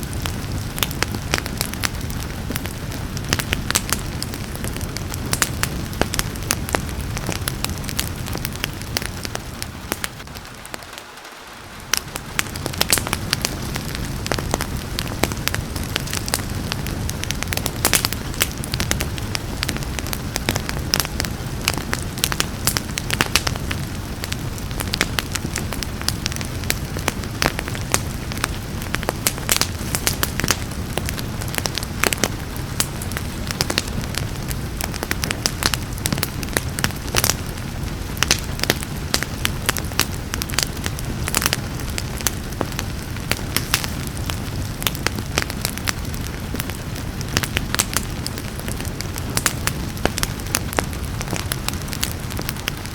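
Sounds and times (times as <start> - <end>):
steady hiss of rain: 0.0 - 52.9
wood fire crackling and popping: 0.0 - 52.9.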